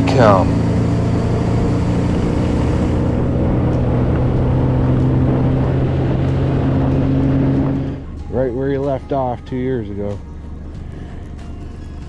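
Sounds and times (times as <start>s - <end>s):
outboard motor running: 0.0s - 8.5s.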